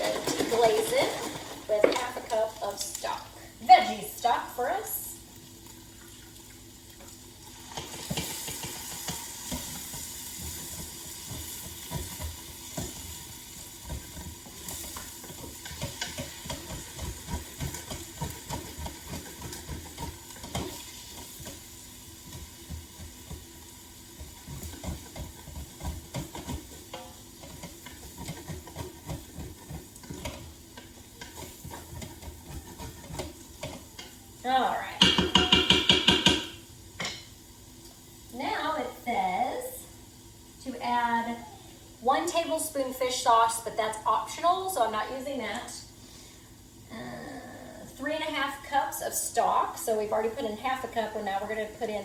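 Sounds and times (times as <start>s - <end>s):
stock sizzling in a pot: 0.0s - 52.0s
wooden spoon scraping pot bottom: 13.8s - 21.6s, 24.2s - 33.9s.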